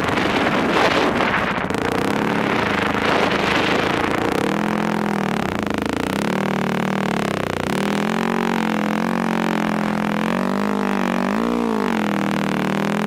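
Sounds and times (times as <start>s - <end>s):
quad bike engine running: 0.0s - 13.0s.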